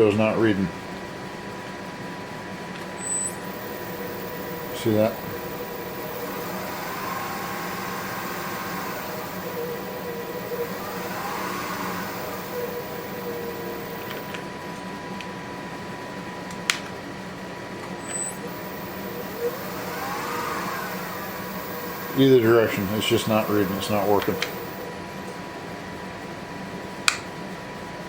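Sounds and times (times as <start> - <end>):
wood lathe motor whine: 3.0 - 14.6, 18.1 - 24.9.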